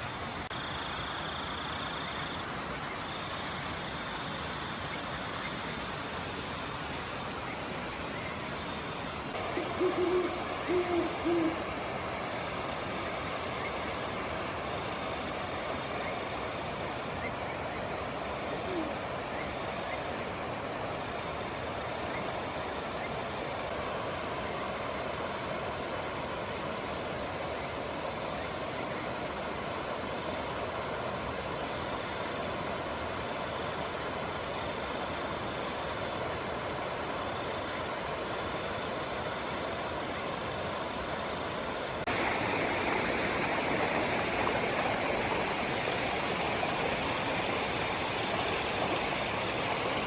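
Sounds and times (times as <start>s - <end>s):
night insects chirring: 0.0s - 50.0s
owl hooting: 9.3s - 14.1s, 17.2s - 20.0s.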